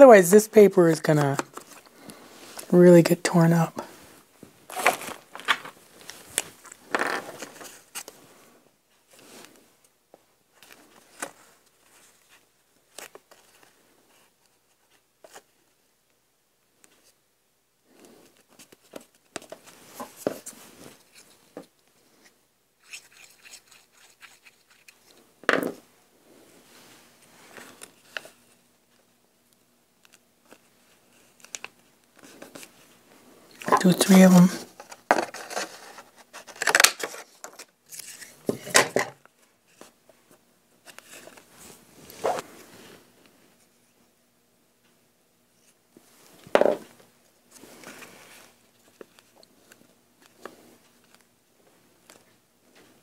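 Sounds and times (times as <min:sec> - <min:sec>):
paper rustling: 0:04.7 - 0:08.2, 0:33.6 - 0:38.8.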